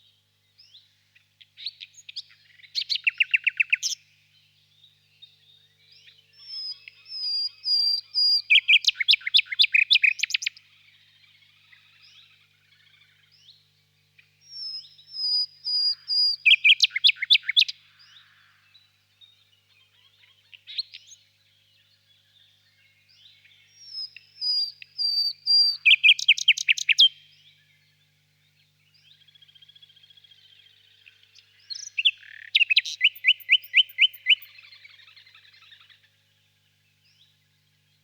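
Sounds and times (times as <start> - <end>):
faint bird chirps: 0.0 - 38.0
nightingale singing: 1.6 - 18.2, 22.1 - 28.0, 29.0 - 36.1.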